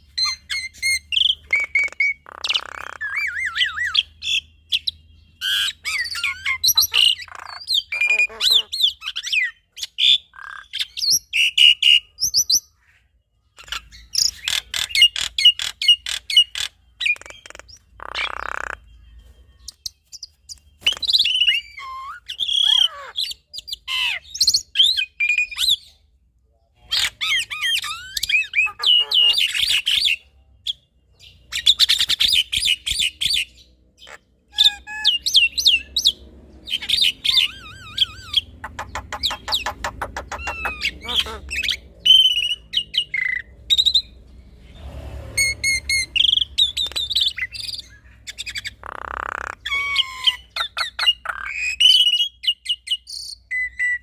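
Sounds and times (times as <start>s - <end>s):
harsh rasping bird call: 36.7s - 43.5s.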